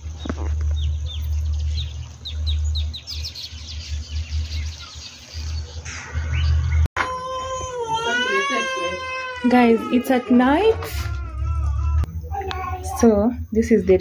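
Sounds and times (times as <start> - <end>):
small birds chirping: 0.0 - 6.9.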